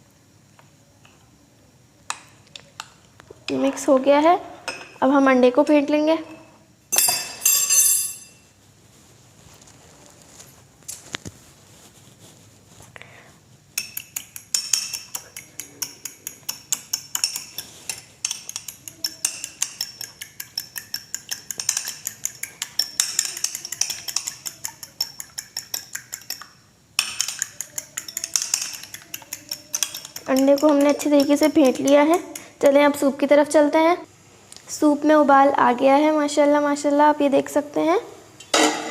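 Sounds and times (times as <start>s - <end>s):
eggs beaten in a bowl: 13.7s - 33.2s.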